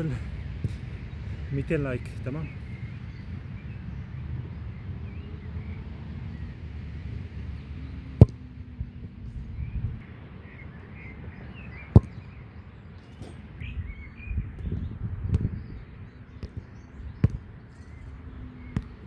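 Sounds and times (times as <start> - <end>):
football being kicked: 0.0 - 5.3, 6.7 - 9.4, 11.4 - 12.4, 14.5 - 19.0
low rumble: 0.0 - 10.0
faint birds chirping: 0.0 - 19.0.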